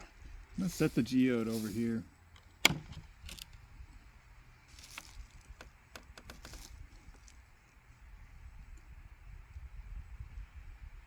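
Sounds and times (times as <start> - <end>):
rocks clicking and scraping: 4.7 - 7.5.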